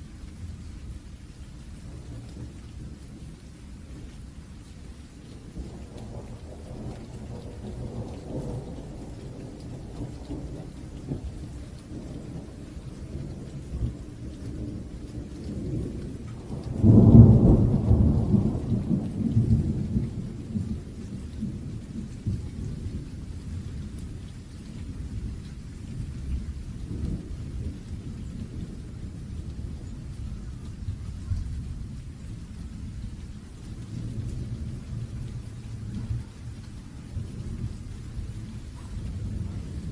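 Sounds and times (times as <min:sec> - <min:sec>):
low rolling thunder: 0:00.0 - 0:39.9
steady rain: 0:00.0 - 0:39.9
loud thunderclap: 0:14.6 - 0:23.0, 0:37.1 - 0:39.9.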